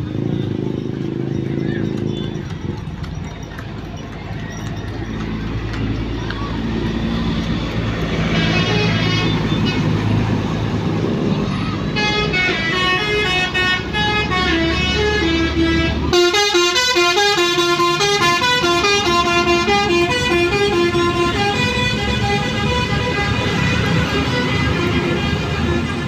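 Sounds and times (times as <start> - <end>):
musical bus horn tune: 8.0 - 26.0.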